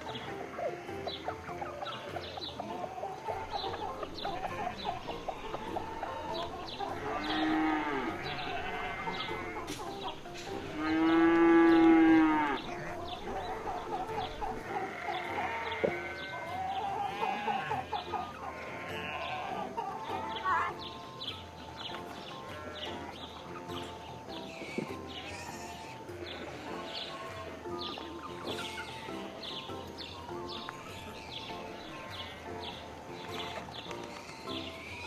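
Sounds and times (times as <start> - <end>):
short chirping calls: 0.0 - 35.0
cow mooing: 4.1 - 19.7.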